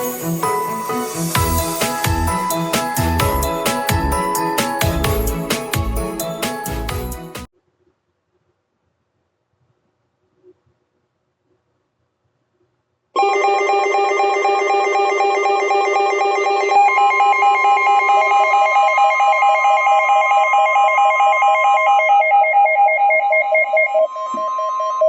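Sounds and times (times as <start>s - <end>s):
slow pulsing beep: 13.4s - 25.0s.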